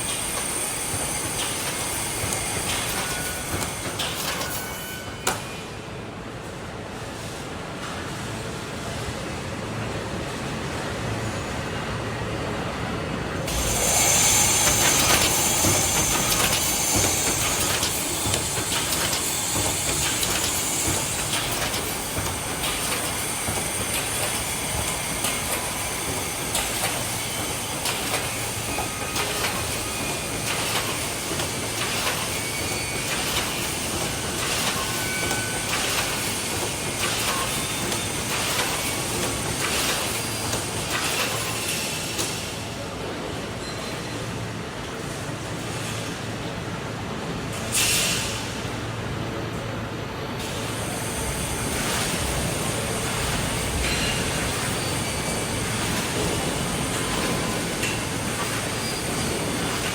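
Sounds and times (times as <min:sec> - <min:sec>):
strong air hiss: 0:13.5 - 0:28.6.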